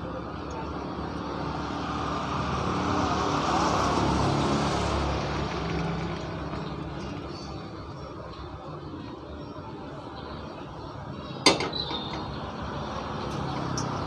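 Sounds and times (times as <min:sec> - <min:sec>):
engine passing by: 0:00.7 - 0:07.8.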